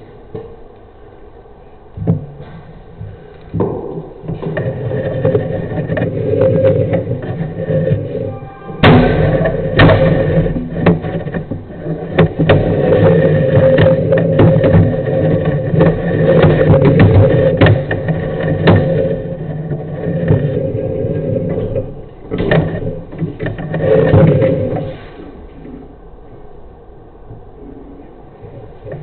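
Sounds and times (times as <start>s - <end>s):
steady mechanical hum: 0.0s - 29.0s
camera knocking and scraping in pipe: 3.5s - 8.3s, 8.9s - 24.9s.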